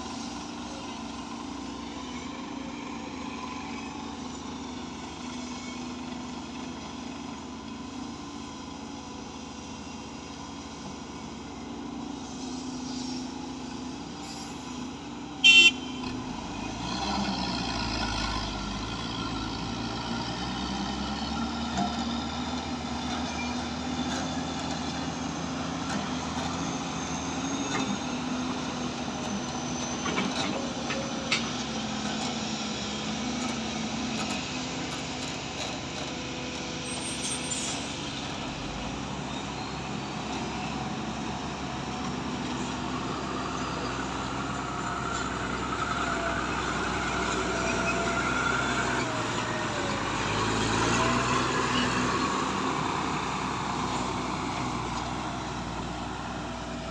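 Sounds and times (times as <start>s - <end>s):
diesel engine rumbling: 0.0s - 56.9s
horn toot: 15.4s - 16.2s.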